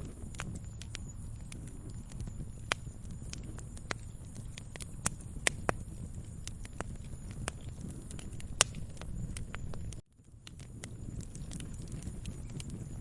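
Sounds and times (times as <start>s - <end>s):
fireplace fire crackling: 0.0s - 13.0s
low steady rumble: 0.0s - 13.0s.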